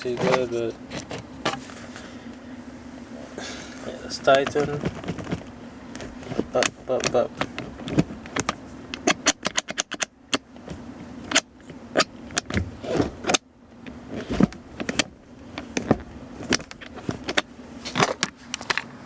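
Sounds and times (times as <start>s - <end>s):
allen key clicking on metal: 9.0s - 10.4s.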